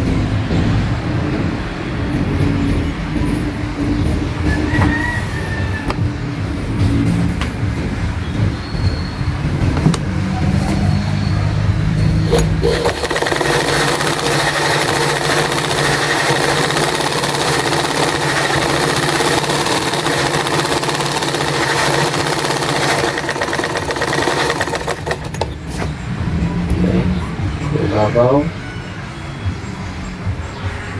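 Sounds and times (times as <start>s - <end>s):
sewing machine running: 12.2s - 25.6s.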